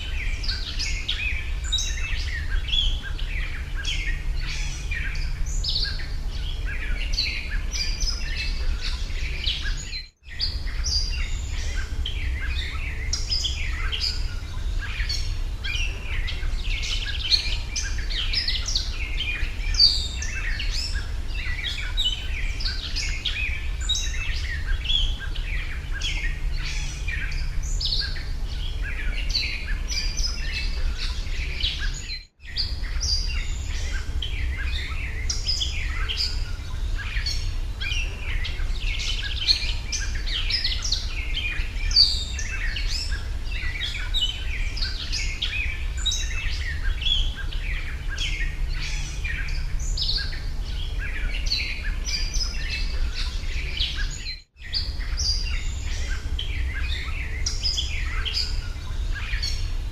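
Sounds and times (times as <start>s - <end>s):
small birds chirping and singing: 0.0s - 59.9s
steady low hum: 0.0s - 59.9s.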